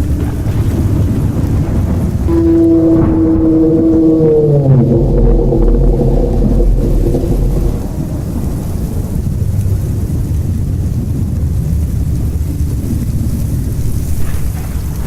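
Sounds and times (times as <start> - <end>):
low droning moan: 0.0 - 11.1
deep steady rumble: 0.0 - 15.0.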